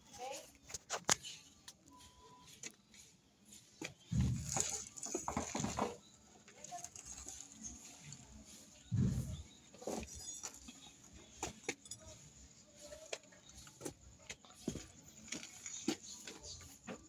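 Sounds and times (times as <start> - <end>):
metallic clinks of tools: 9.8 - 12.3.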